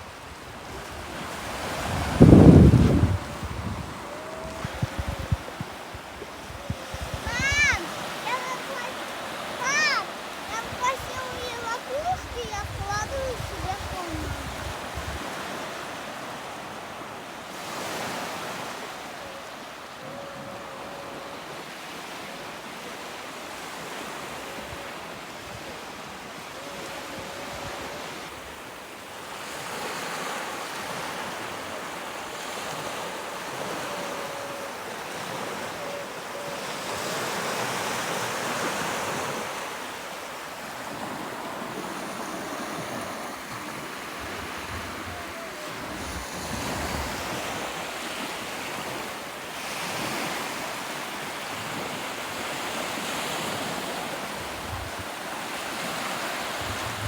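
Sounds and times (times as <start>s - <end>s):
wind rumbling on microphone: 0.0s - 8.0s, 10.6s - 15.3s, 41.9s - 47.9s, 54.3s - 55.2s, 56.5s - 57.0s
sea waves breaking on shore: 0.0s - 57.0s.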